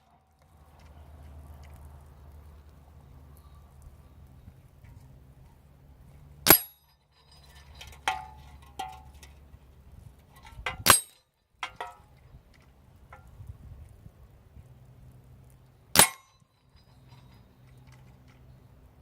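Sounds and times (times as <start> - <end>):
low steady rumble: 0.0 - 19.0
light metallic clicks and pings: 6.5 - 9.4, 15.9 - 18.7
air rifle shots: 16.0 - 16.3.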